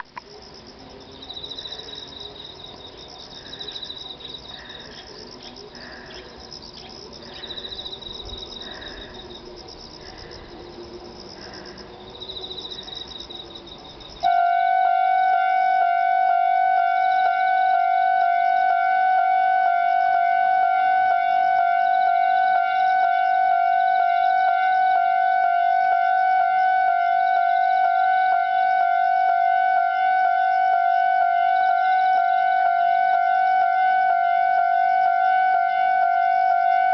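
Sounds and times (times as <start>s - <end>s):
faint high chirping: 0.2s - 14.3s
level crossing warning bell: 1.0s - 5.5s.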